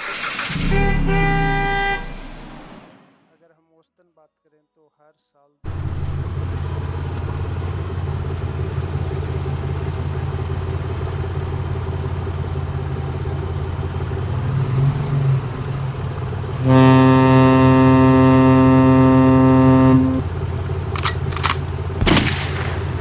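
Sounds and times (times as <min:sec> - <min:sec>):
vehicle engine humming: 0:00.0 - 0:03.0, 0:05.7 - 0:23.0
loud horn blaring: 0:00.4 - 0:02.7, 0:16.5 - 0:20.3.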